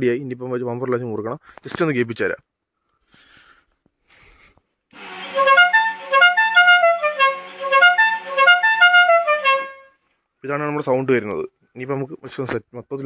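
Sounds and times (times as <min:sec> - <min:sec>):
musical air horn tune: 0:05.0 - 0:10.0.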